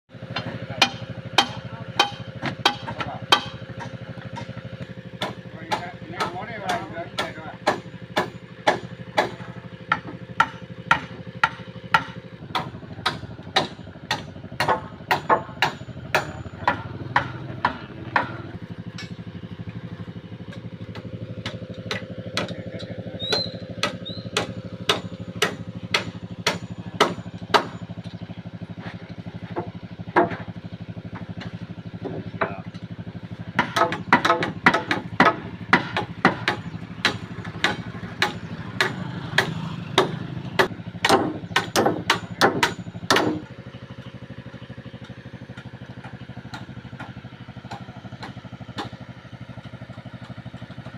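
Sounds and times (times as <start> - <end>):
engine running: 0.0 - 50.9
hammer blows: 0.4 - 4.5, 5.2 - 19.3, 20.5 - 27.9, 33.5 - 43.5.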